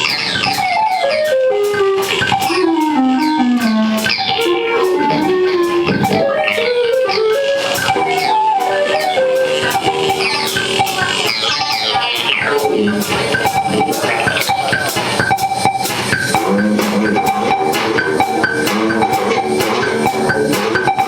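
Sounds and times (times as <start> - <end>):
drums with cymbal hits: 0.0 - 21.0.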